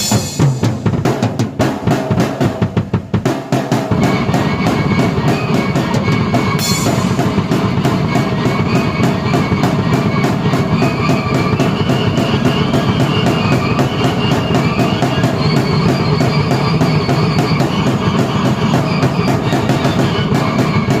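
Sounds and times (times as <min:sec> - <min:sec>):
cymbal crash: 0:00.0 - 0:01.0, 0:03.9 - 0:21.0
fast drum beat: 0:00.0 - 0:21.0.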